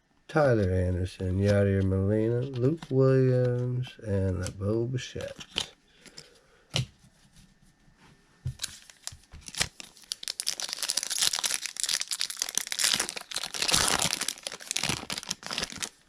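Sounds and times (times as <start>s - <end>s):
wrapper crinkling: 8.6s - 16.0s.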